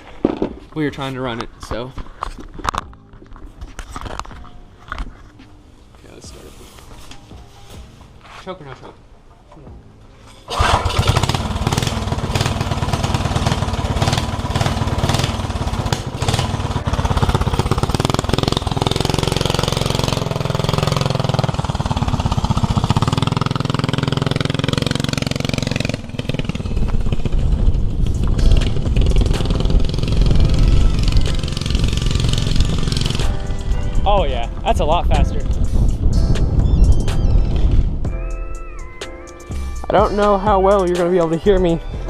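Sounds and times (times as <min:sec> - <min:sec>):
small engine running: 0:10.5 - 0:33.4.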